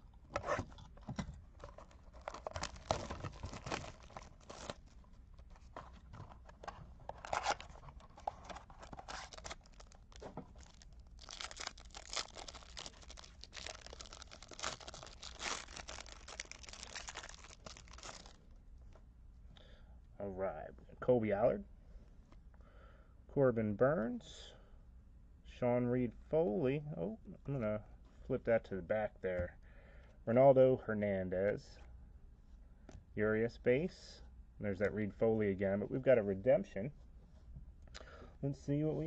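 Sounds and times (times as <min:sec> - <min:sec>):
wrapper tearing and crinkling: 0:01.6 - 0:05.0, 0:07.1 - 0:18.4.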